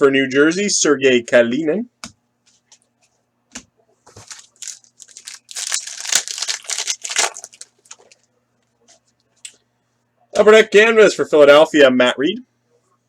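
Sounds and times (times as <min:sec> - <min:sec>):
cards being handled: 0:04.1 - 0:08.2
foil wrapper crinkling and tearing: 0:04.2 - 0:08.3.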